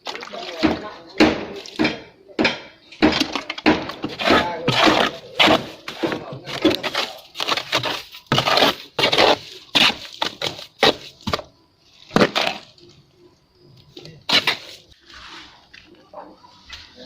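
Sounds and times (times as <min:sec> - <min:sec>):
trowel scraping and slapping render: 0:00.0 - 0:02.0, 0:03.1 - 0:11.5, 0:12.1 - 0:12.7, 0:14.2 - 0:15.6.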